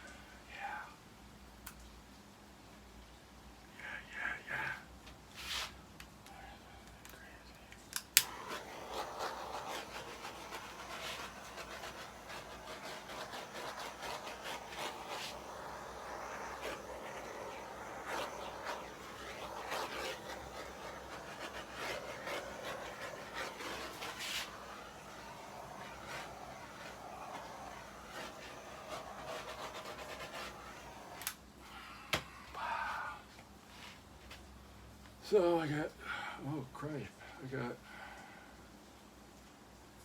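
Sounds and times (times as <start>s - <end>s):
rubbing and scraping with ticks: 8.2s - 31.3s.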